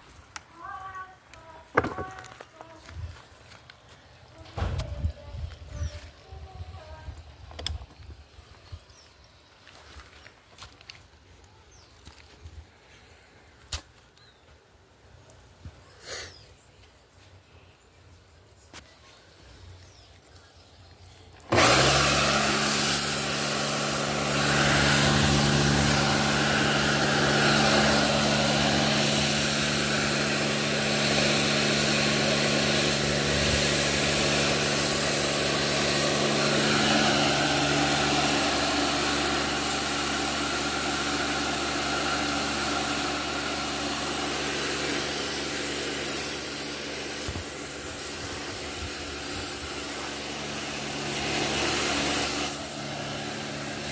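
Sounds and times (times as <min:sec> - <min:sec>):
water spray hiss: 0:20.6 - 0:53.9
pressure washer motor hum: 0:21.2 - 0:53.9.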